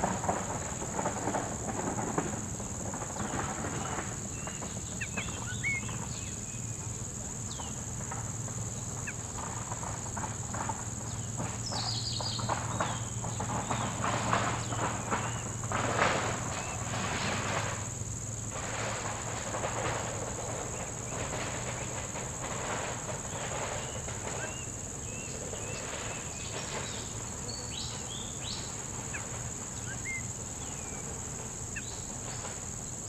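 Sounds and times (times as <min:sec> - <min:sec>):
insects droning: 0:00.0 - 0:33.0
bird chirps: 0:04.4 - 0:06.7.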